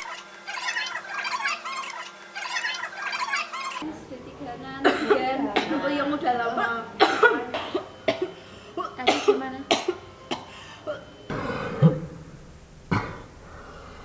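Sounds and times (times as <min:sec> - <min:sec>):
person coughing: 0:04.8 - 0:06.0, 0:06.6 - 0:11.2.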